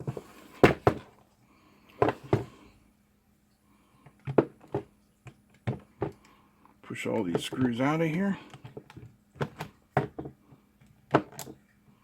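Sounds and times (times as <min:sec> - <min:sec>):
clicks and knocks of plastic housing: 0:08.5 - 0:11.6.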